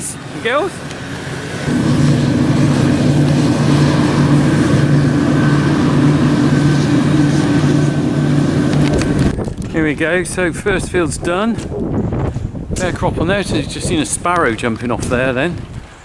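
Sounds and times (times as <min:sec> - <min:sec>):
farm machinery engine running: 0:01.2 - 0:09.4
faint high whine: 0:01.6 - 0:09.3.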